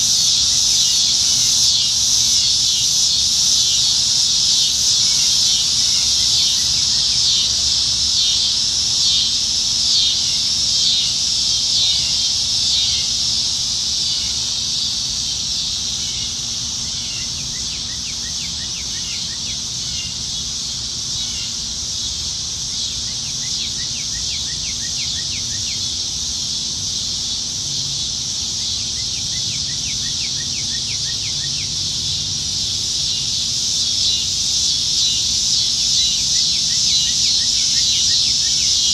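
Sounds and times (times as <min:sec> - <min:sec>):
chorus of cicadas singing: 0:00.0 - 0:38.9
rapid ticking insect call: 0:00.0 - 0:38.9.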